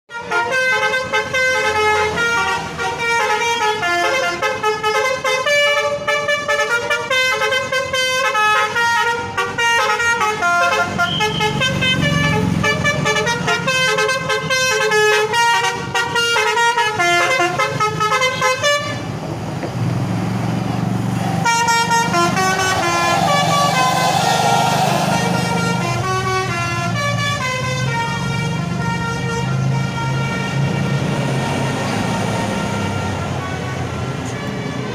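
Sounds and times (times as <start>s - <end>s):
multi-tone bus horn melody: 0.1s - 19.2s, 21.0s - 34.9s
low engine rumble: 19.4s - 26.4s.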